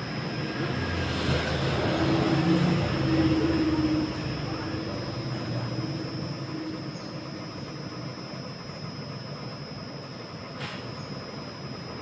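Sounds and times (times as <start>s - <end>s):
carpet spinner rumble and whoosh: 0.0s - 12.0s
motor hum: 0.0s - 12.0s.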